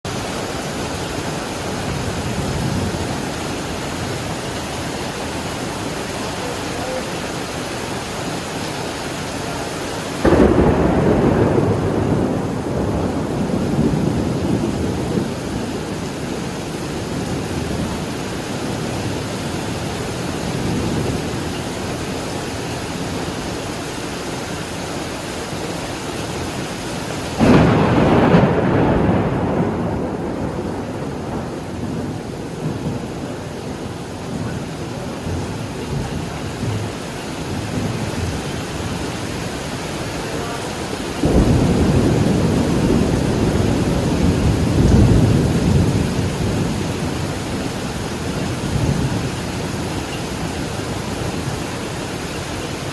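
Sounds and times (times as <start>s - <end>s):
heavy rain: 0.0s - 52.9s
thunder rumbling: 0.1s - 52.9s
loud thunderclap: 10.2s - 22.0s, 27.2s - 39.1s, 41.2s - 51.7s.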